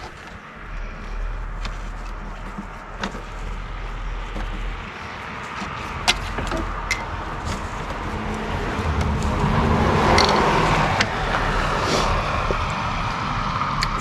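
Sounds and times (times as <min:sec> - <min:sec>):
broad rumble: 0:00.0 - 0:14.0.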